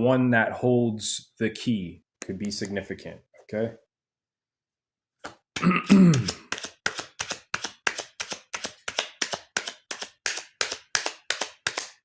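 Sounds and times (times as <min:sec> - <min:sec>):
voice humming: 0:05.6 - 0:06.4
sharp evenly spaced taps: 0:06.1 - 0:12.0.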